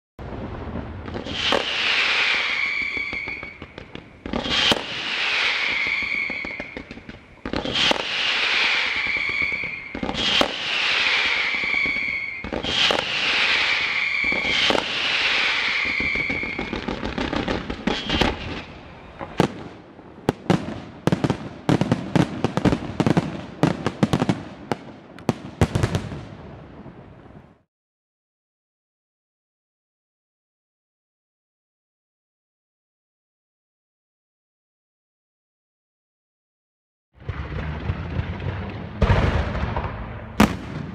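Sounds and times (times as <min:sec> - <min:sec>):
firework bangs: 0:00.2 - 0:27.4, 0:37.2 - 0:40.9
firework crackles: 0:00.2 - 0:27.6, 0:37.2 - 0:40.9
falling firework whistle: 0:01.0 - 0:19.6.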